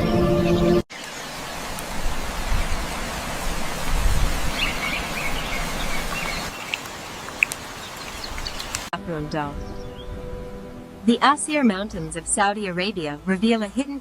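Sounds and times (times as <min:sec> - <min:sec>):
steady outdoor hiss: 0:00.9 - 0:08.9
birds chirping: 0:04.3 - 0:08.9.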